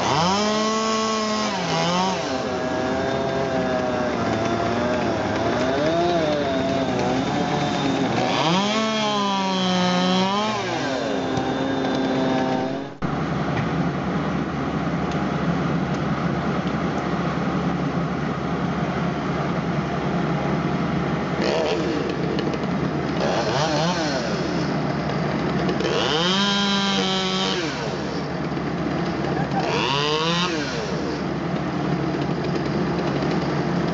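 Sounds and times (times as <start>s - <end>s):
chainsaw running and revving: 0.0s - 13.0s, 21.4s - 33.9s.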